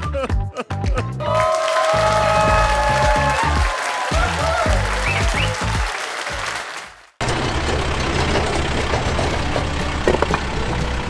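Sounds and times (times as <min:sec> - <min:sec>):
music: 0:00.0 - 0:06.5, 0:07.8 - 0:11.0
applause: 0:01.3 - 0:07.2
truck engine humming: 0:04.3 - 0:05.8, 0:07.2 - 0:11.0.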